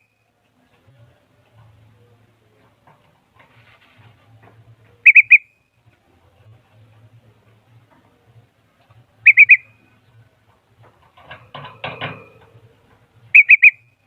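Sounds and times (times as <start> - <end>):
songbird whistled call: 5.0 - 5.6, 9.2 - 9.8, 13.3 - 14.0
scratchy bird chatter: 9.2 - 9.7.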